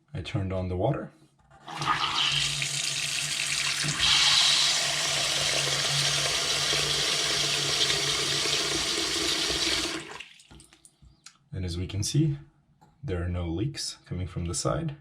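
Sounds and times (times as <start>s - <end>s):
faucet water running into sink: 1.7s - 10.7s.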